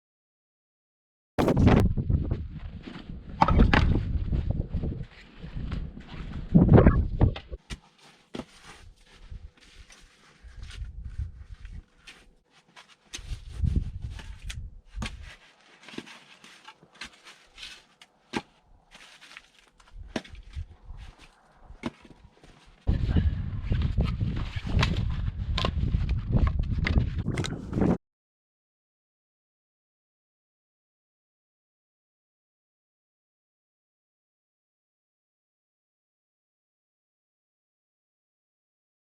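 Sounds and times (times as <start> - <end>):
footsteps: 1.4 - 23.0.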